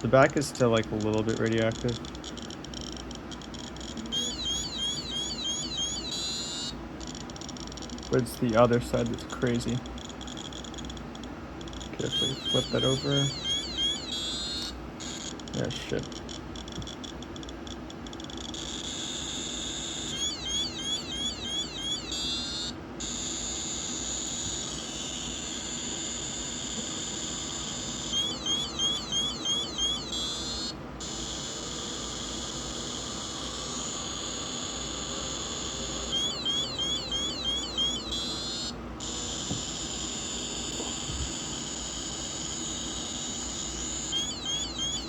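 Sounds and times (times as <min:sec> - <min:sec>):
radiation detector hiss: 0:00.0 - 0:45.0
rapid chirping alarm beeps: 0:00.0 - 0:45.0.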